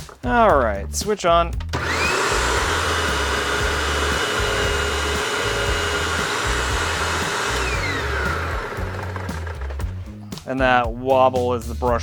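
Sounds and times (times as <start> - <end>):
vacuum cleaner running: 1.7 - 10.0.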